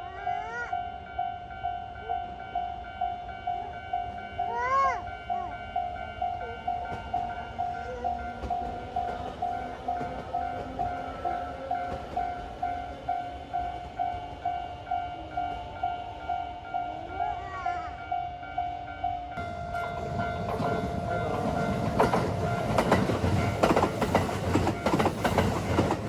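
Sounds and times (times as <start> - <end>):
level crossing bell dinging: 19.4 - 25.1.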